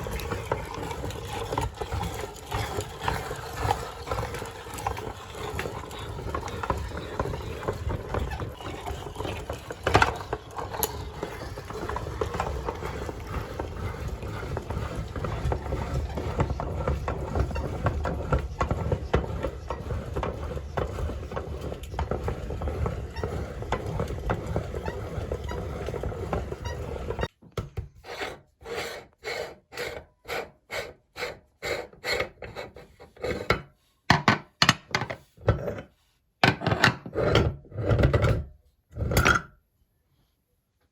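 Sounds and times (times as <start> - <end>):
meat grinder rattling and clicking: 0.0 - 27.3.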